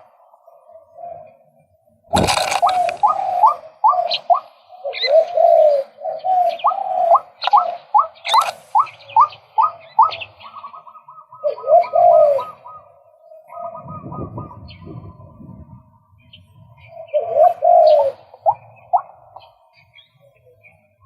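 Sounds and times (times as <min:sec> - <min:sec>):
waterhen calling: 0:02.1 - 0:10.9.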